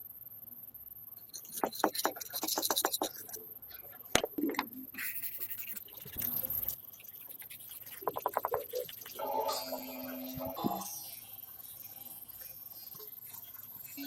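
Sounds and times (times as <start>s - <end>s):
hand scrubbing and scraping: 1.4s - 3.4s, 7.5s - 8.8s.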